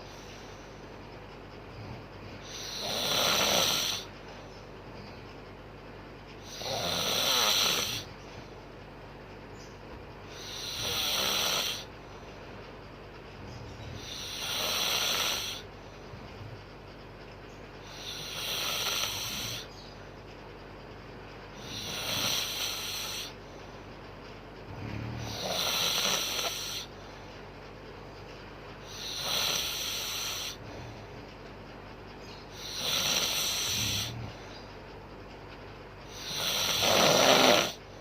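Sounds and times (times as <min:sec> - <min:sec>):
woman snoring: 0:02.4 - 0:04.1, 0:06.5 - 0:08.1, 0:10.3 - 0:11.9, 0:13.8 - 0:15.6, 0:17.9 - 0:19.7, 0:21.6 - 0:23.4, 0:24.7 - 0:26.9, 0:28.9 - 0:30.7, 0:32.6 - 0:34.4, 0:36.1 - 0:37.8.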